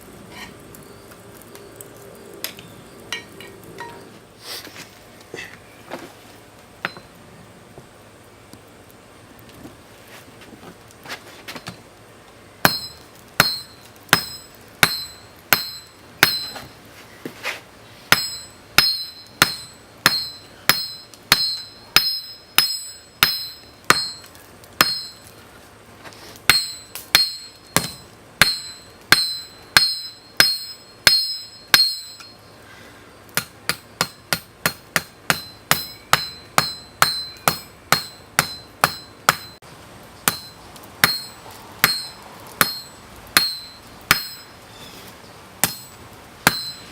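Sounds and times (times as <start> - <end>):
hammer ringing on anvil: 12.7 - 16.7, 18.1 - 25.3, 26.5 - 32.4, 33.4 - 39.6, 40.3 - 44.5, 45.6 - 46.9.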